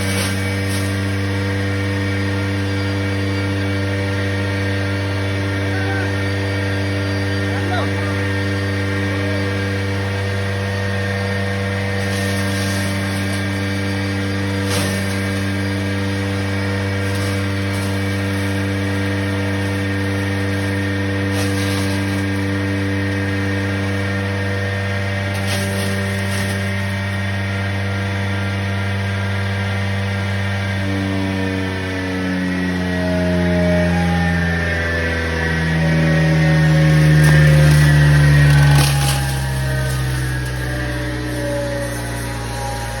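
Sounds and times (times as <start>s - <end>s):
wood chipper running: 0.0s - 43.0s.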